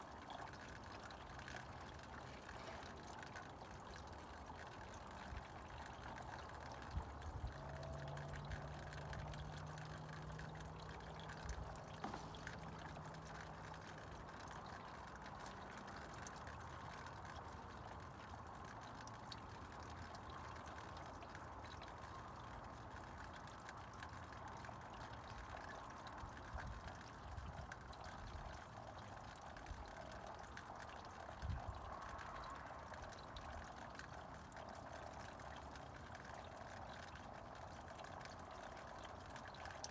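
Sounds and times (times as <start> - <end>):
water trickling: 0.0 - 39.9
soft thumps: 12.0 - 12.6.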